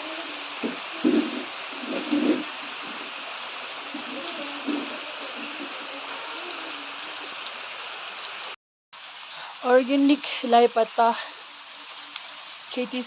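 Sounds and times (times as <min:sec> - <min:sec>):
faint voices: 0:00.0 - 0:07.9
rain hissing: 0:00.0 - 0:13.0.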